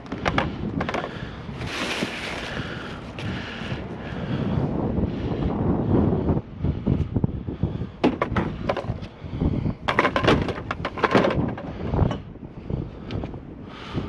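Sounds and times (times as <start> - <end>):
objects knocking and clattering: 0.0 - 1.1, 8.0 - 9.0, 9.8 - 12.2
low wind rumble on microphone: 0.0 - 14.0.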